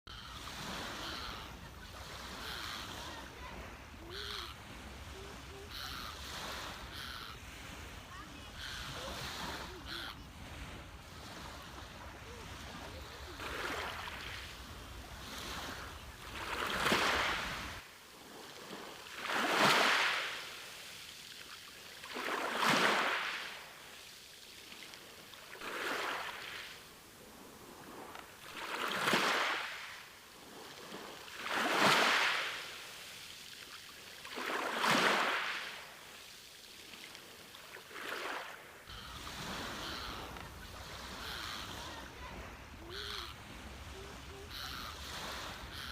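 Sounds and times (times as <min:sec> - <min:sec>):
ocean waves breaking on beach: 0:00.1 - 0:45.9.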